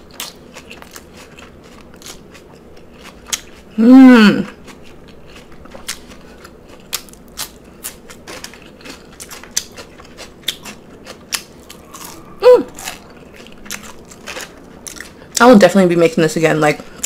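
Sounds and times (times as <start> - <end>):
wet chewing crunches: 0.0 - 3.8, 4.4 - 15.4
brief falling vocal sound: 11.7 - 13.0.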